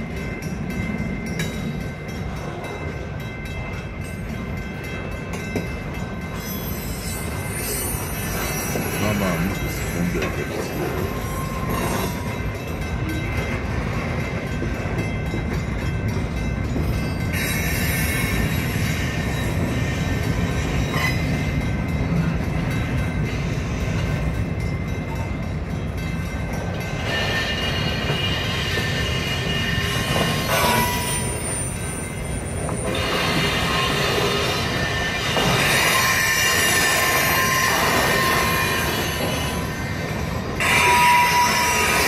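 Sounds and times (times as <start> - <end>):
train wheels rumbling on rail: 0.0 - 42.0
faint high wheel squeal: 6.4 - 12.4, 27.0 - 42.0.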